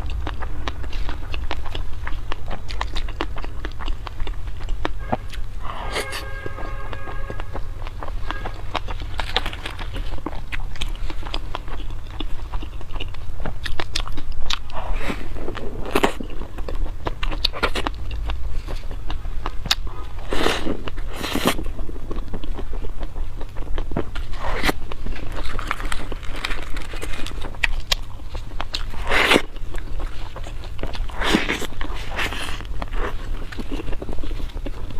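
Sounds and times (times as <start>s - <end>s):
wet chewing: 0.0s - 34.9s
crisp bites: 7.8s - 19.1s, 24.0s - 34.9s.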